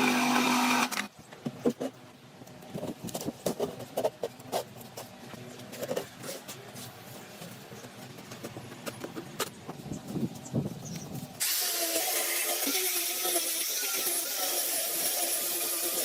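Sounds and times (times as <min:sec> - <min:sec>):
power tool running: 0:00.0 - 0:01.1, 0:11.4 - 0:16.0.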